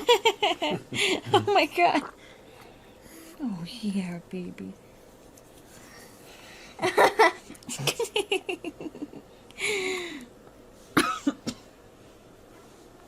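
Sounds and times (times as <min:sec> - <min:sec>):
person laughing: 0:06.8 - 0:09.8.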